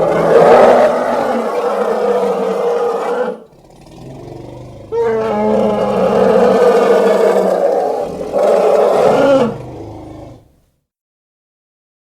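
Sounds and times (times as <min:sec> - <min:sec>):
elephant calling: 0:00.0 - 0:03.6, 0:04.3 - 0:10.4.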